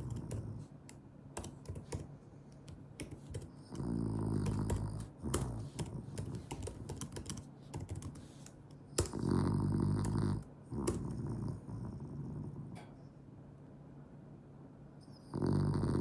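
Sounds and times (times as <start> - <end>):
dog snoring: 3.8 - 6.1, 9.1 - 12.9, 15.3 - 16.0.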